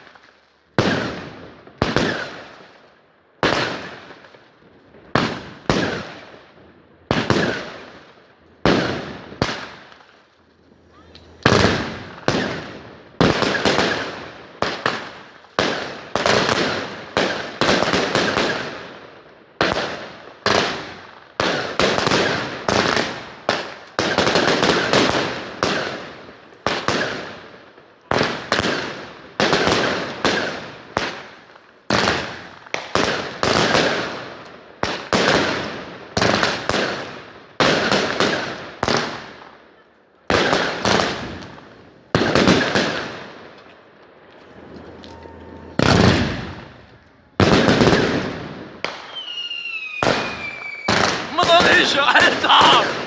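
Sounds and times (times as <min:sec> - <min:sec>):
fireworks bangs: 0:07.0 - 0:18.8, 0:40.3 - 0:53.0.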